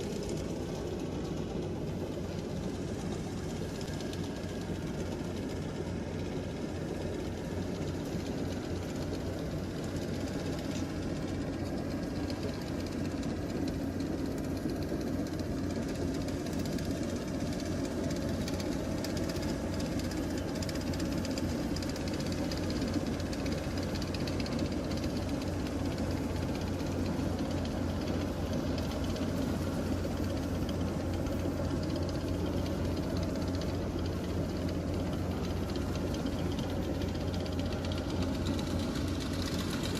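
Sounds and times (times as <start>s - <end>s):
harvester engine running: 0.0s - 39.9s.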